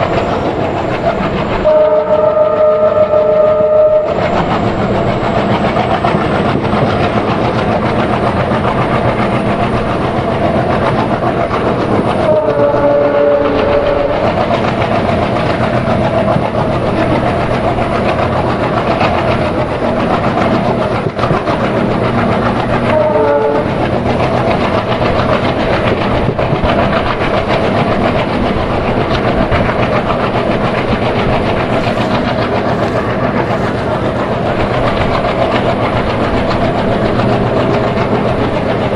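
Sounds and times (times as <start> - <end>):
train wheels clattering on rails: 0.0 - 38.9
train horn: 1.6 - 4.2, 12.2 - 14.4, 22.9 - 23.8.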